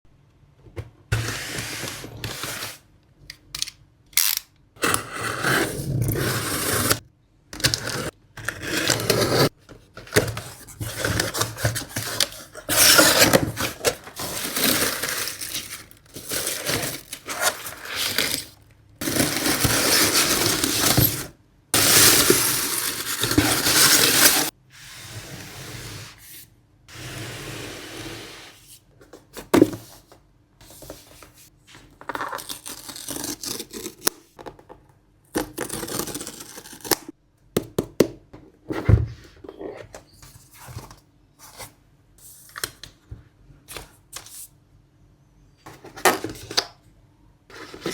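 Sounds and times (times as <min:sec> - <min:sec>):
cardboard packaging scraping and rustling: 0:04.8 - 0:07.0, 0:07.6 - 0:24.6, 0:47.5 - 0:47.9.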